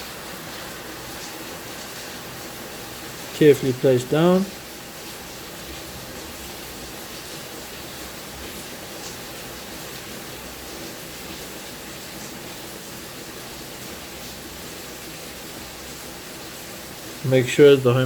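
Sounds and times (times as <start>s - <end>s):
steady background hiss: 0.0s - 5.5s, 16.9s - 18.0s.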